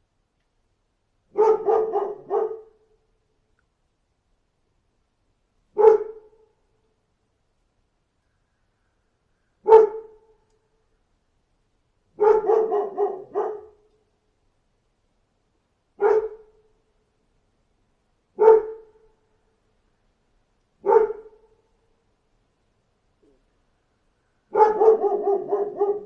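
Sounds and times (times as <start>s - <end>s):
dog barking: 1.3s - 2.9s, 5.8s - 6.4s, 9.6s - 10.3s, 12.2s - 13.9s, 16.0s - 16.6s, 18.4s - 19.0s, 20.8s - 21.6s, 24.5s - 26.0s.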